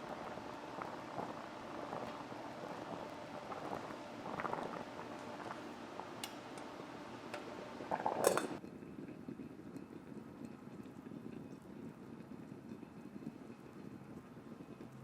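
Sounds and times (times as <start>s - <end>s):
steady low hiss: 0.0s - 8.6s
kitchenware clinking: 7.4s - 8.6s.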